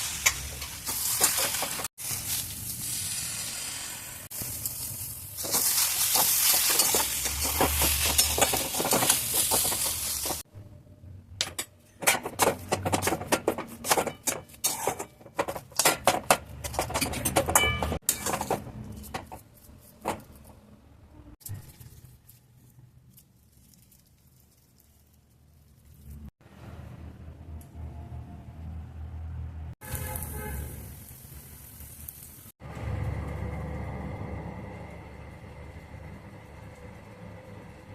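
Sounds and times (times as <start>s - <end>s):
food sizzling in frying pan: 0.0s - 10.5s, 29.8s - 32.5s.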